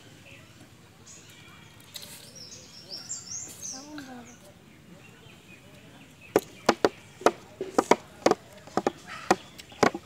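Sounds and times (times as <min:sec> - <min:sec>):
blade chopping mango: 0:06.4 - 0:10.0.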